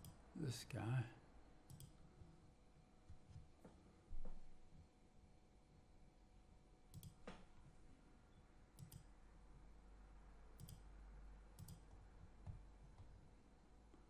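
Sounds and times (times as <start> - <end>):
computer mouse double-clicks: 1.7 - 2.0, 6.9 - 7.2, 8.8 - 9.1, 10.6 - 10.8, 11.6 - 11.9.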